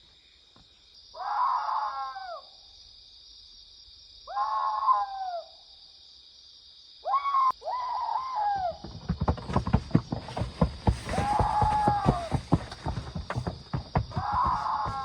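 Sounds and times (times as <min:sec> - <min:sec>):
rapid low thumps: 0:08.8 - 0:15.0.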